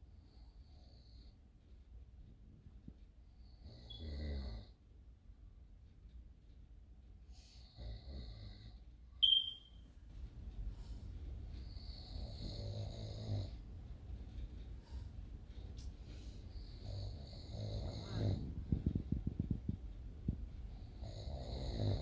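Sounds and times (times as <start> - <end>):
brief high whistle: 9.2 - 9.8
man snoring: 12.0 - 13.6, 16.8 - 18.4, 21.0 - 22.0.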